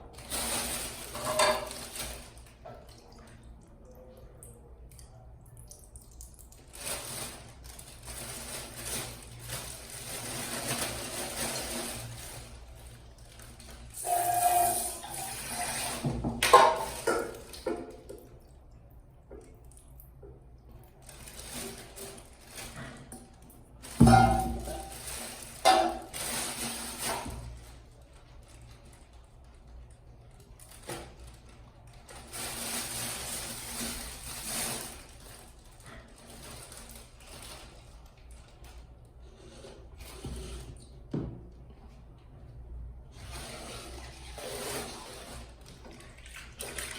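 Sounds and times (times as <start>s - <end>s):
water running and splashing: 43.6s - 46.9s.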